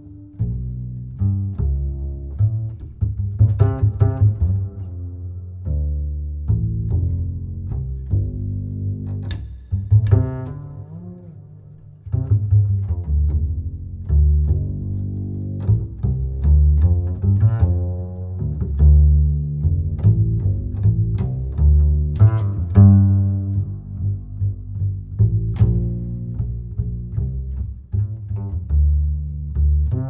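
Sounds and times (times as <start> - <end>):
low plucked and bowed strings: 0.0 - 30.0.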